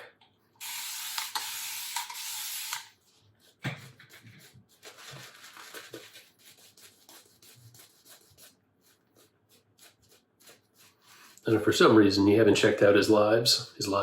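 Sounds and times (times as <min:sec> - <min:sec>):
shaving gear rubbing and scratching: 0:03.1 - 0:14.0.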